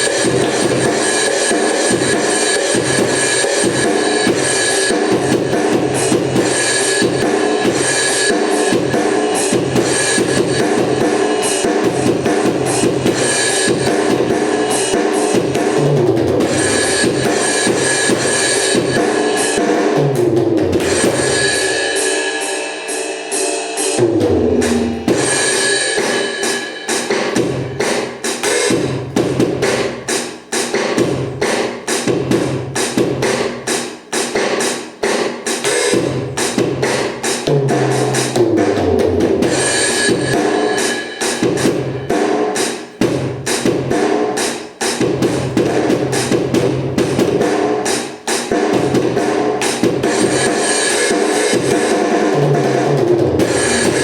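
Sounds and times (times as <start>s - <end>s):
electronic drum groove: 0.0s - 22.2s, 22.8s - 54.0s.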